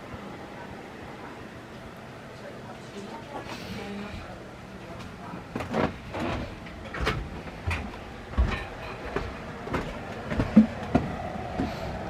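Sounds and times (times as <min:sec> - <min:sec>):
footsteps and handling thumps: 0:05.5 - 0:11.8.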